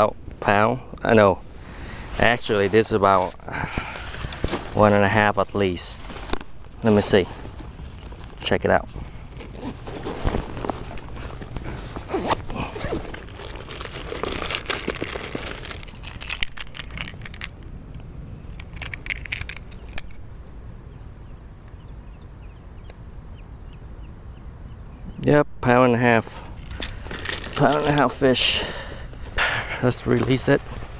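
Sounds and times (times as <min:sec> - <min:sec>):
rustling crinkling handling noise: 0:01.8 - 0:17.7, 0:26.4 - 0:30.9.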